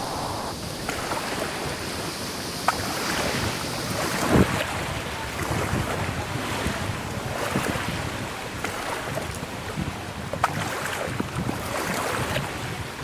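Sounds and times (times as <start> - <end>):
water lapping and splashing: 5.3 - 13.0.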